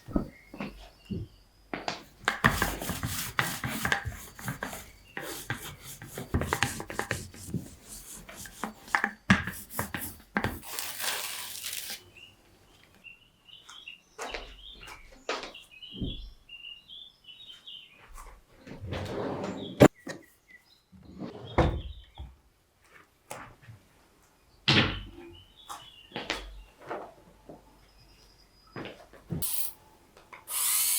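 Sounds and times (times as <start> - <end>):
rubbing and scraping strokes: 2.3 - 11.9
steady hiss: 30.5 - 30.9.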